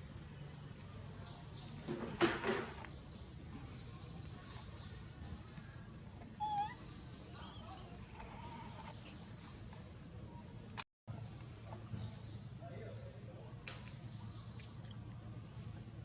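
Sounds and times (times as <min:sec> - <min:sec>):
steady low background noise: 0:00.0 - 0:02.1, 0:02.8 - 0:16.0
high-pitched animal calls: 0:06.4 - 0:06.8.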